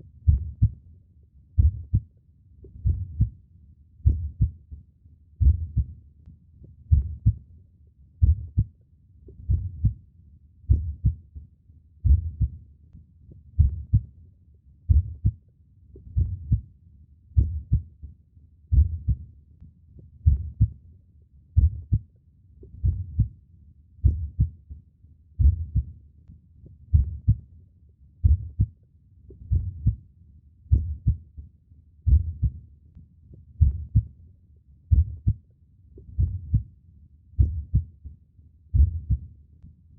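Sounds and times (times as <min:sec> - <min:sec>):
heartbeat thumps: 0:00.3 - 0:00.8, 0:01.6 - 0:02.1, 0:02.7 - 0:03.3, 0:04.0 - 0:04.6, 0:05.4 - 0:05.9, 0:06.8 - 0:07.4, 0:08.2 - 0:08.7, 0:09.4 - 0:10.0, 0:10.7 - 0:11.2, 0:12.0 - 0:12.6, 0:13.6 - 0:14.1, 0:14.9 - 0:15.4, 0:16.0 - 0:16.7, 0:17.4 - 0:17.9, 0:18.7 - 0:19.2, 0:20.2 - 0:20.8, 0:21.6 - 0:22.0, 0:22.7 - 0:23.3, 0:24.0 - 0:24.6, 0:25.4 - 0:25.9, 0:26.8 - 0:27.4, 0:28.2 - 0:28.7, 0:29.4 - 0:30.0, 0:30.7 - 0:31.2, 0:32.0 - 0:32.6, 0:33.6 - 0:34.1, 0:34.9 - 0:35.4, 0:36.0 - 0:36.7, 0:37.4 - 0:38.0, 0:38.7 - 0:39.3.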